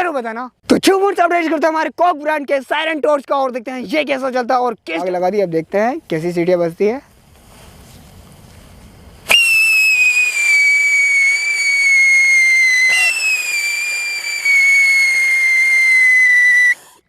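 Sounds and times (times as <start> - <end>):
firework shrill whistle: 9.3 - 17.0.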